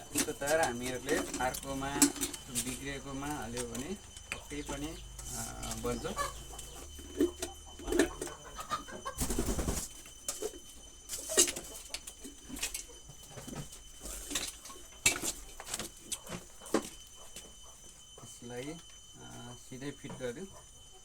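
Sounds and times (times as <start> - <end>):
pigeon cooing: 0.0 - 10.7.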